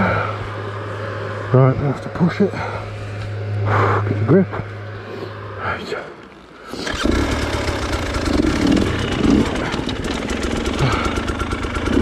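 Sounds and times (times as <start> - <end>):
off-road motorcycle engine revving: 6.7 - 12.0.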